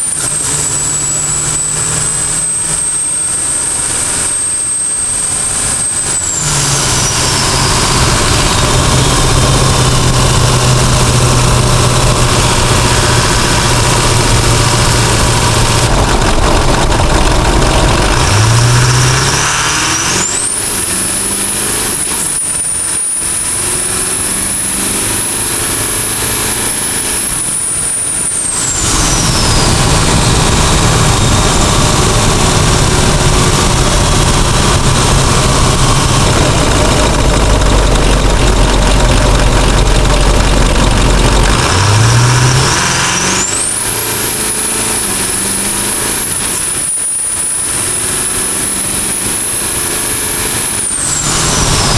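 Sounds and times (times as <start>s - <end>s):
diesel engine running: 0.0s - 51.9s
turbocharger whistling: 0.0s - 51.9s.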